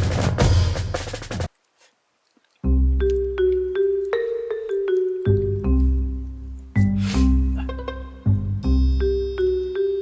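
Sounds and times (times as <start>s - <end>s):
mallet percussion melody: 2.7s - 10.0s.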